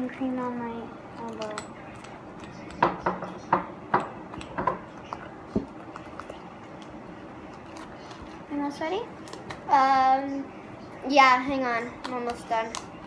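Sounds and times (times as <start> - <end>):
utensil clinking against bowl: 1.2 - 6.4.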